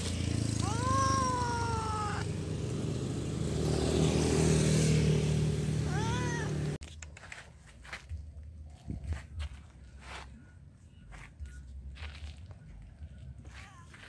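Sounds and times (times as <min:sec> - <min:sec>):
cat meowing: 0:00.6 - 0:02.2, 0:05.9 - 0:06.7.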